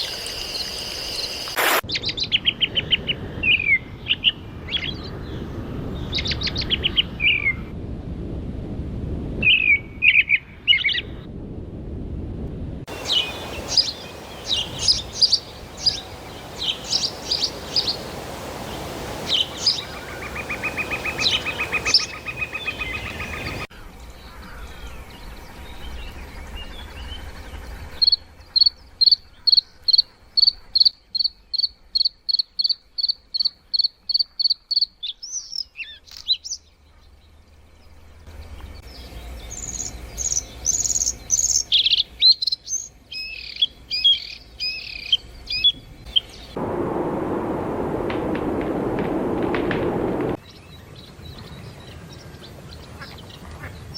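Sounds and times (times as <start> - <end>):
wild birds singing and calling: 0.0 - 5.4, 12.9 - 33.1, 33.7 - 46.6
repeating bird chirp: 12.9 - 23.7.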